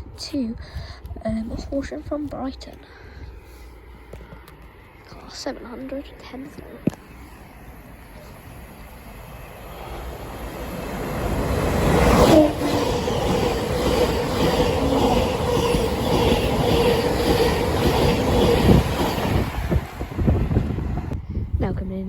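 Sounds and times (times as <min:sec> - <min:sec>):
electric train passing: 0:01.8 - 0:21.2
train wheel clatter: 0:11.2 - 0:20.8.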